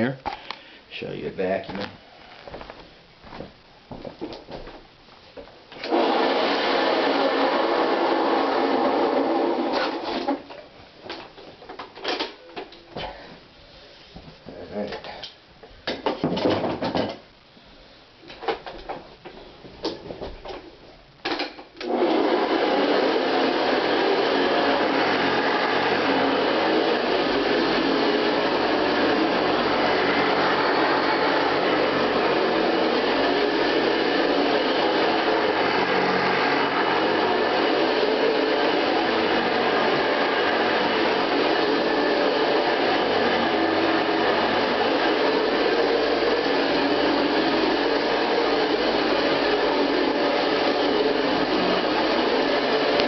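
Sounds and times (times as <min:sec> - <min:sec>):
vacuum cleaner motor running: 0:05.8 - 0:10.3, 0:21.8 - 0:53.0.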